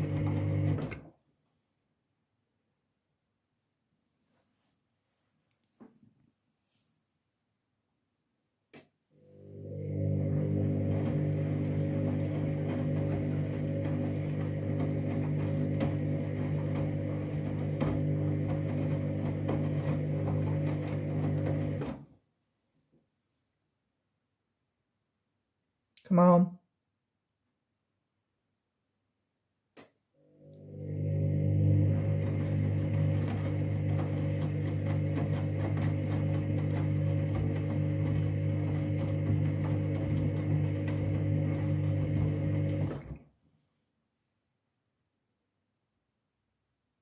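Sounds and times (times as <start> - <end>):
washing machine motor humming: 0.0 - 1.2, 9.2 - 22.1, 30.2 - 43.2.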